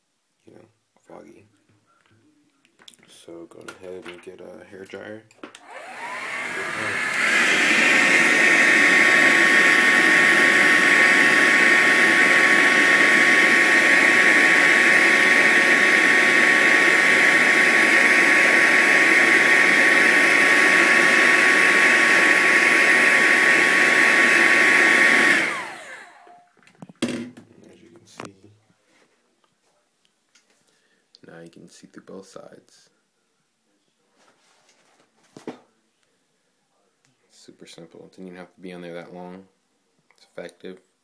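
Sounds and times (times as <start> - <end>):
hair dryer running: 5.5 - 26.5.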